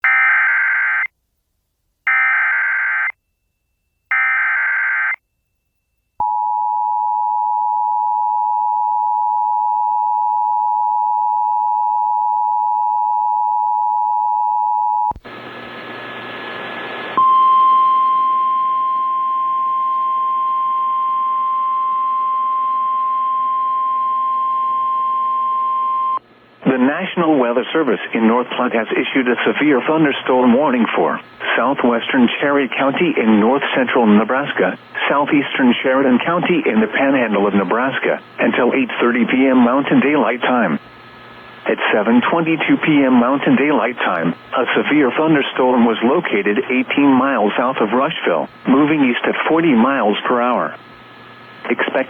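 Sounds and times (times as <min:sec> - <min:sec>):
steady alarm tone: 0:02.1 - 0:14.8
radio static: 0:15.2 - 0:17.2, 0:26.6 - 0:52.0.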